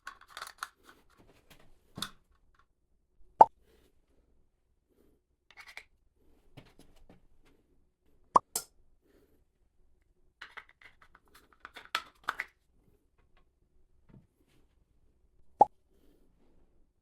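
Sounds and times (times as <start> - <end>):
hard objects set on countertop: 10.4 - 12.5.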